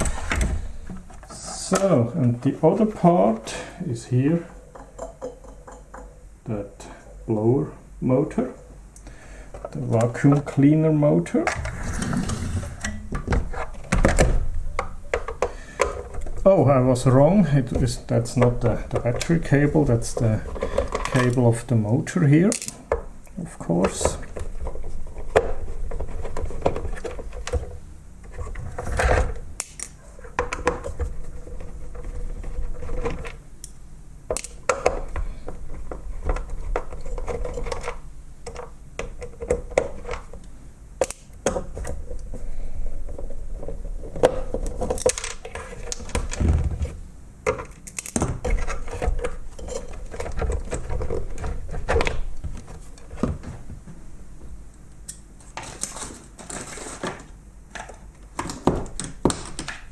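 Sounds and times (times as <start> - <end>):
parts and tools clattering: 0.0 - 6.3, 55.4 - 59.8
steady hum: 0.0 - 59.9.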